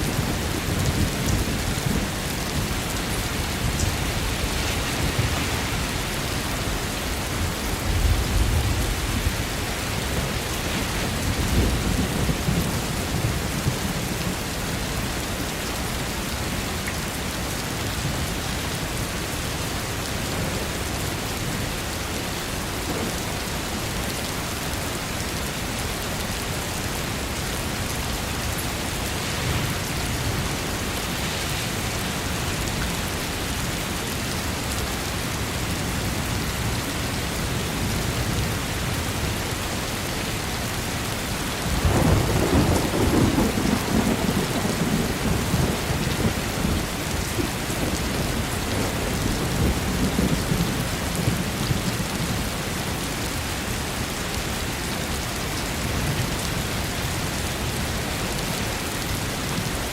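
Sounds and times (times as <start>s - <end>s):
steady rain falling: 0.0s - 59.9s
low thunder rumbling: 41.6s - 52.4s.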